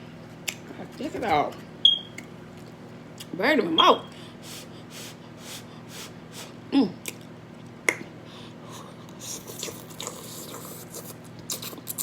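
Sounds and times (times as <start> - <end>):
person breathing in sharp puffs: 4.3 - 6.6.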